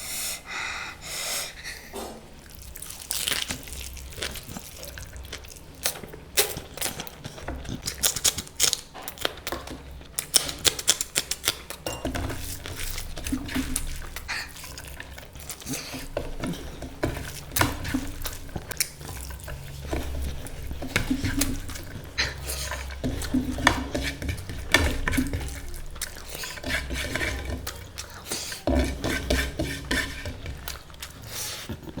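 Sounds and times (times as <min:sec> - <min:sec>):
dishes and cutlery clinking: 0:11.8 - 0:13.8.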